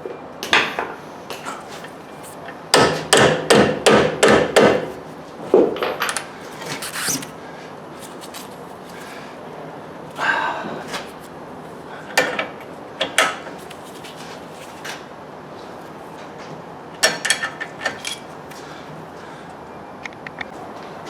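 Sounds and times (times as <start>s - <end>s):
metal tools clanking: 5.6s - 7.3s.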